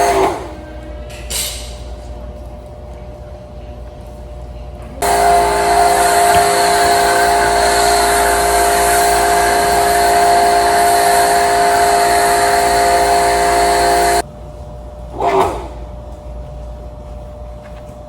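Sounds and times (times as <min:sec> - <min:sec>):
pressure washer running: 0:00.0 - 0:00.7, 0:05.0 - 0:14.2.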